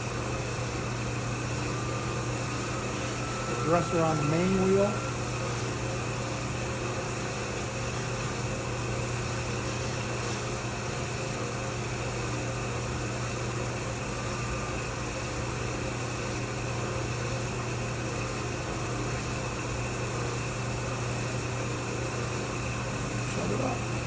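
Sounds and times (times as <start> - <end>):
grinder humming and hissing: 0.0 - 11.6.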